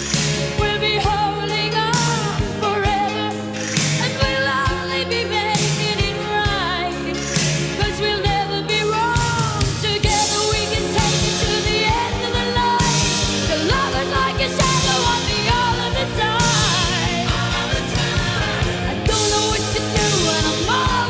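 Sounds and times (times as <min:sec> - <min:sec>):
band playing: 0:00.0 - 0:21.0
person singing: 0:00.0 - 0:21.0.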